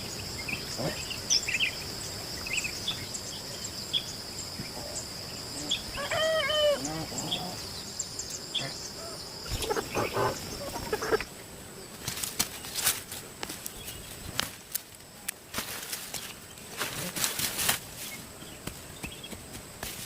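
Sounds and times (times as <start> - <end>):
birds chirping: 0.0 - 12.0, 18.1 - 19.4
chicken calling: 5.6 - 7.5, 9.0 - 11.3.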